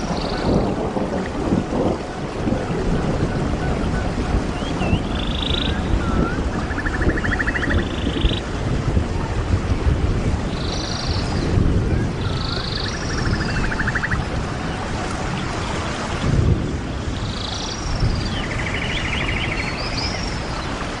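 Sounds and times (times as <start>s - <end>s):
wind rumble on microphone: 0.0s - 21.0s
birds calling: 3.0s - 8.5s, 10.5s - 15.7s.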